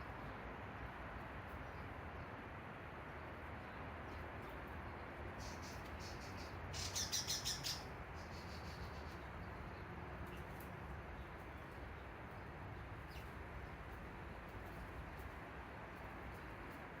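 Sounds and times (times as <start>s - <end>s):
sparrow chirping: 5.4s - 9.2s.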